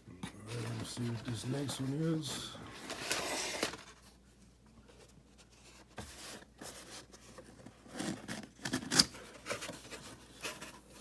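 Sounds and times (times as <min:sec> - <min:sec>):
packaging rustling and tearing: 0:00.6 - 0:04.0.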